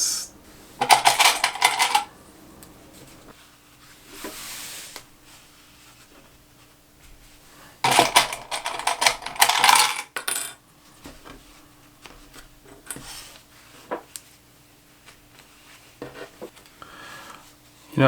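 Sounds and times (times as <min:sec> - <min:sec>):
clattering and jingling objects: 0:00.8 - 0:02.1, 0:07.9 - 0:10.6.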